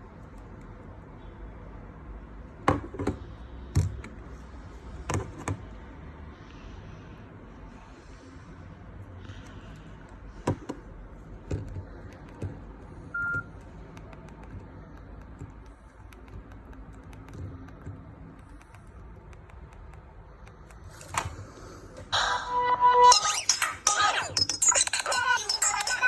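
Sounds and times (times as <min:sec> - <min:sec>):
ringtone melody: 0:22.2 - 0:26.0.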